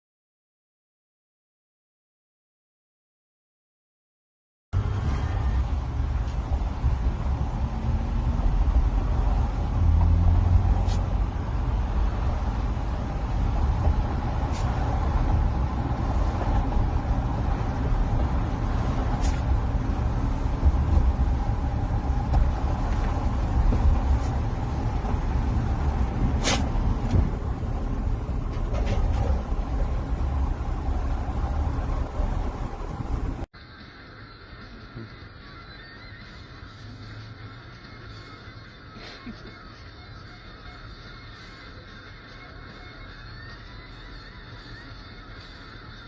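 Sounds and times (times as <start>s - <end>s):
car cabin road rumble: 4.8s - 33.5s.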